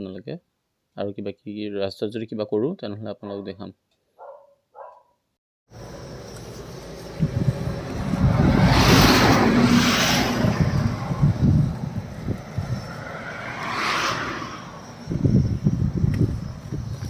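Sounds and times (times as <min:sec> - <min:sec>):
rushing swell of passing traffic: 0:05.8 - 0:16.9
car engine and tyres rumbling: 0:05.8 - 0:17.0.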